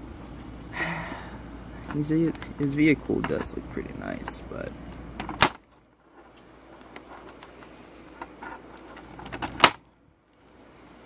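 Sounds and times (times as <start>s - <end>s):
sharp plastic snap: 9.4s - 9.9s.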